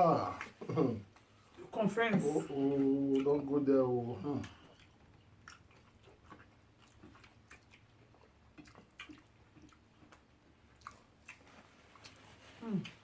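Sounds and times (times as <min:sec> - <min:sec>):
wet chewing and mouth clicks: 0:02.6 - 0:13.0.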